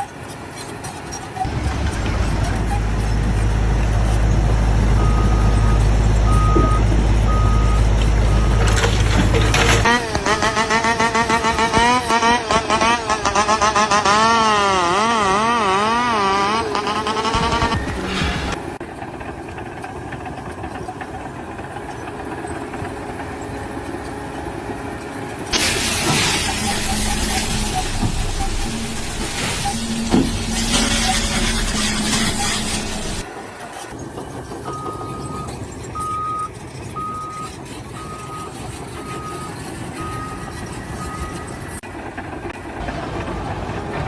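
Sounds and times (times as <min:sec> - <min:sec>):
heavy vehicle engine drone: 0:00.0 - 0:44.0
reversing alarm beeping: 0:05.0 - 0:08.9, 0:25.6 - 0:33.2, 0:34.6 - 0:41.7.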